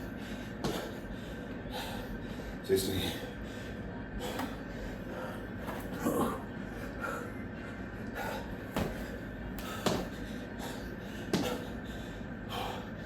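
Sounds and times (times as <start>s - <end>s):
man breathing hard: 0.0s - 13.0s
hands and feet thumping floor: 8.7s - 10.1s.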